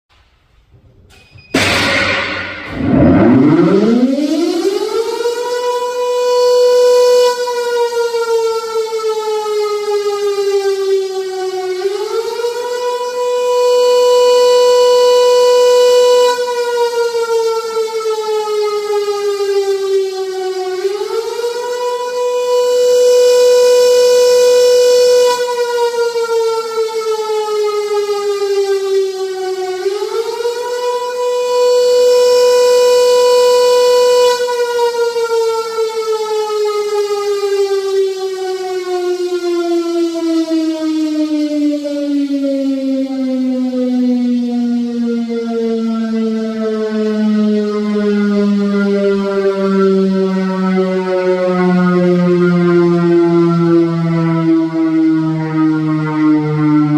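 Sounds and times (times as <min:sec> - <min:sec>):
air raid siren wailing: 0:01.6 - 0:56.9.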